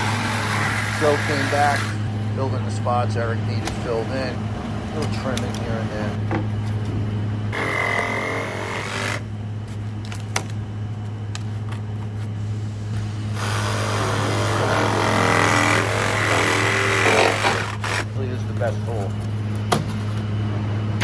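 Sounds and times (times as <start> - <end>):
power tool whining: 0.0 - 2.2, 7.5 - 9.3, 13.3 - 18.2
steady low hum: 0.0 - 21.0.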